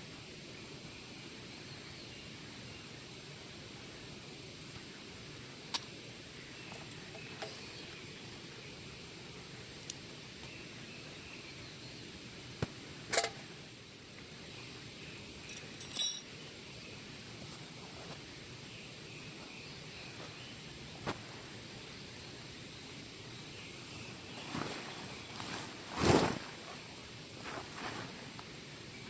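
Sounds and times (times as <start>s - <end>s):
faint outdoor hiss: 0.0s - 29.0s
metal jangling: 15.5s - 16.3s.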